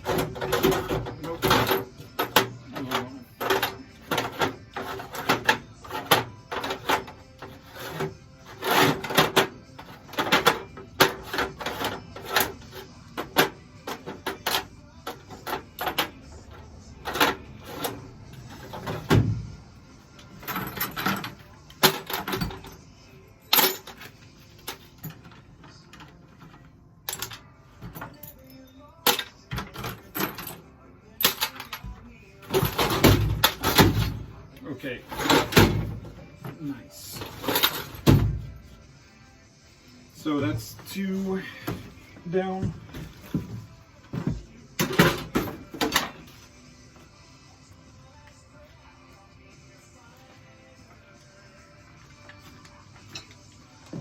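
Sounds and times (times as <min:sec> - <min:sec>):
hardware clattering when set down: 0:00.0 - 0:16.4, 0:20.2 - 0:22.8, 0:23.5 - 0:34.4, 0:35.0 - 0:38.7, 0:40.5 - 0:46.4.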